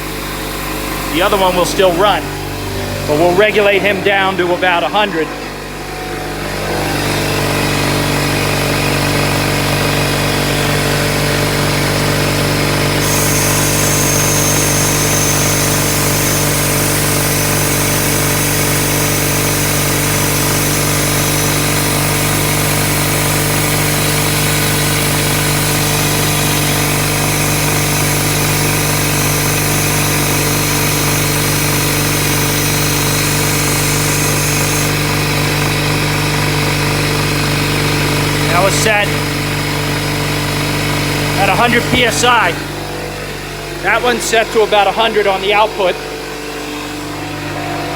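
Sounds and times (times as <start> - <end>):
air compressors droning: 0.0 - 47.9
high air hiss: 13.0 - 35.2.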